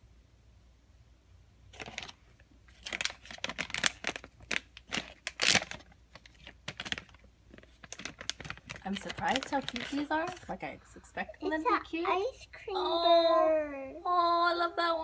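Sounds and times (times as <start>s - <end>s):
plastic bag crinkling: 1.7s - 10.8s.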